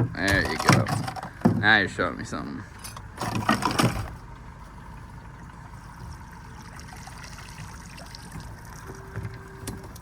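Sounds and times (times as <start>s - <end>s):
steady low hum: 0.0s - 10.0s
water trickling and dripping: 4.3s - 10.0s.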